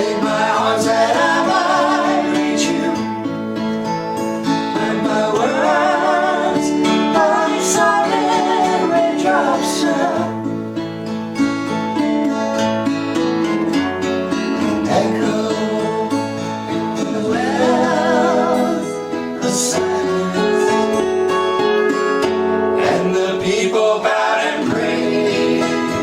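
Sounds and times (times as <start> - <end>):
person singing: 0.0 - 3.1, 4.8 - 10.4, 14.8 - 21.1, 22.8 - 26.0
acoustic guitar: 0.0 - 26.0.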